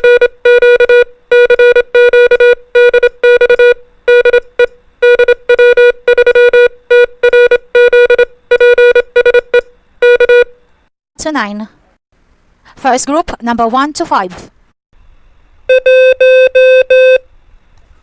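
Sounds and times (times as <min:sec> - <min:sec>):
morse code tone: 0:00.0 - 0:10.5, 0:15.7 - 0:17.2.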